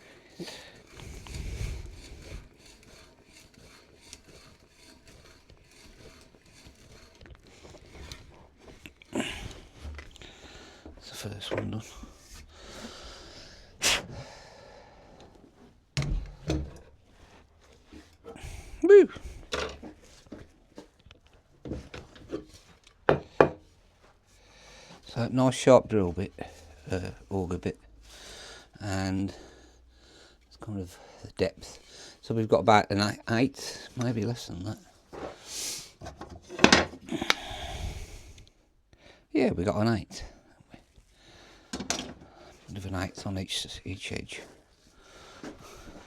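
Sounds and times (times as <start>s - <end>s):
tools rubbing and scraping: 0.0s - 32.2s, 33.4s - 37.4s, 40.2s - 46.0s
wood knocking on workbench: 23.1s - 23.6s.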